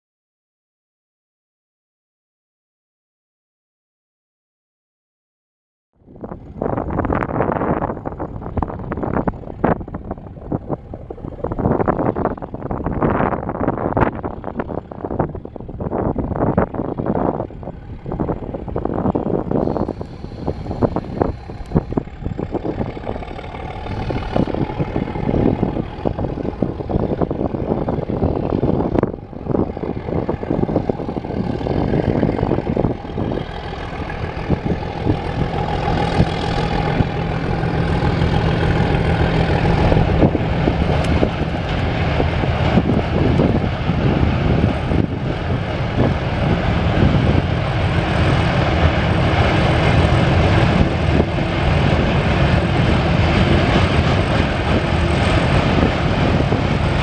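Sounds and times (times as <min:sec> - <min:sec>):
locomotive engine drone: 0:06.0 - 0:57.0
train wheels clattering on track: 0:16.4 - 0:57.0.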